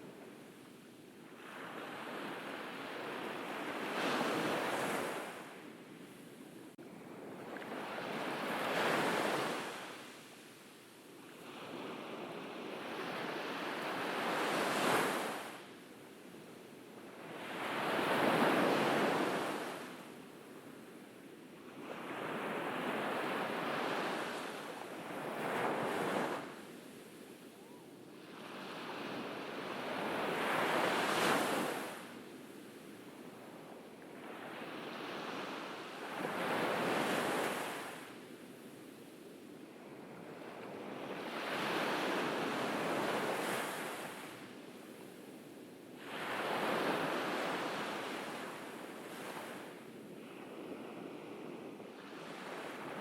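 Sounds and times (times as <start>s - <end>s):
ocean waves breaking on beach: 1.3s - 5.7s, 11.3s - 15.8s, 17.0s - 20.2s, 21.6s - 32.2s, 33.2s - 38.2s, 39.8s - 45.1s, 45.8s - 53.0s.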